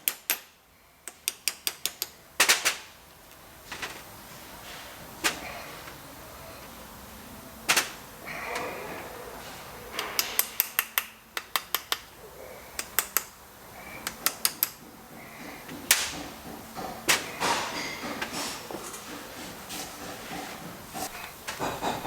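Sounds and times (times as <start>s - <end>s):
ratchet wrench clicking: 1.1s - 2.2s, 10.0s - 12.1s, 12.8s - 13.3s, 14.0s - 14.8s.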